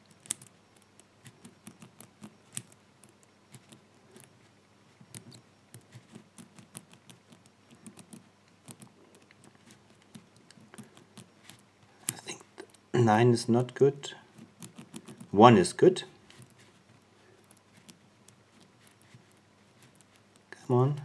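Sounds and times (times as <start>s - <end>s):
padlock wheels clicking: 14.4s - 15.3s.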